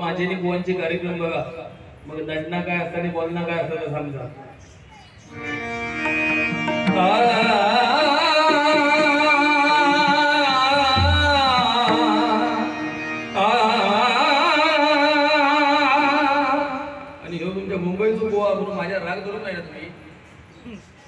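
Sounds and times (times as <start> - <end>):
sustained accompaniment notes: 5.3 - 15.3
man singing ornamented notes: 5.4 - 18.5.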